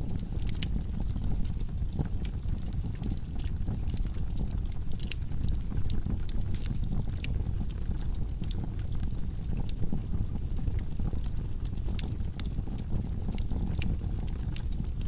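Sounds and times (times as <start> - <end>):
fire crackling and popping: 0.0 - 15.0
low rumble of flames: 0.0 - 15.0.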